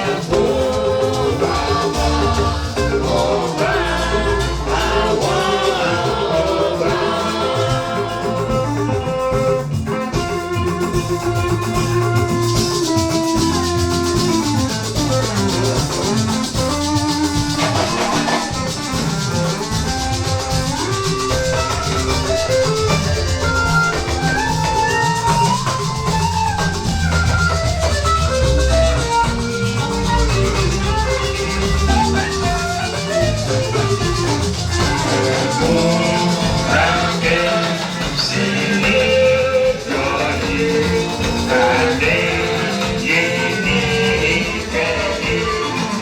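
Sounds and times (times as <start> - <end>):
bass: 0.0 - 46.0
drums: 0.0 - 46.0
guitar: 0.0 - 46.0
shaker rattling: 0.0 - 46.0
melody line: 17.3 - 36.8.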